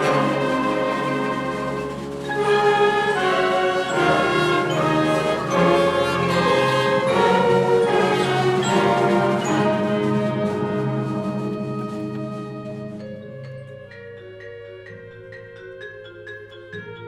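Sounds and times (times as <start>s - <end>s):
concert band brass and wind chords: 0.0s - 13.5s.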